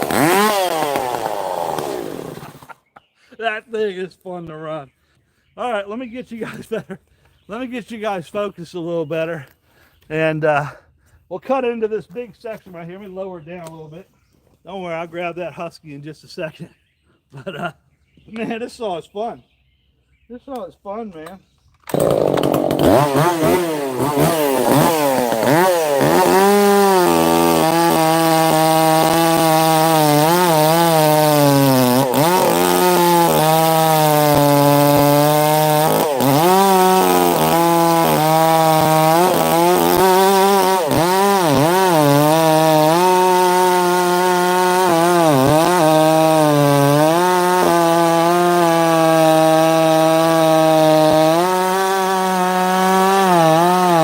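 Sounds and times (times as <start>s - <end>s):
chainsaw cutting log: 0.0s - 2.8s, 21.8s - 54.0s.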